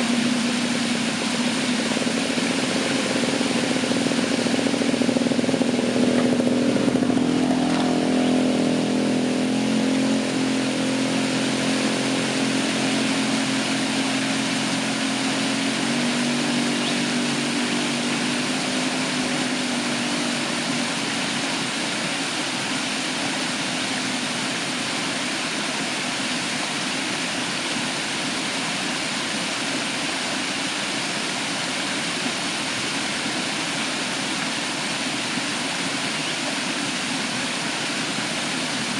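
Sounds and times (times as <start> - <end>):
vehicle engine hum: 0.0 - 30.4
waterfall rushing: 0.0 - 38.9.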